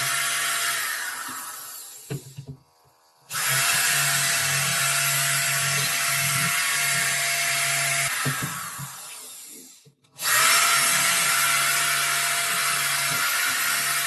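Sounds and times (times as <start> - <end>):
electric power tool whining: 3.3 - 14.0.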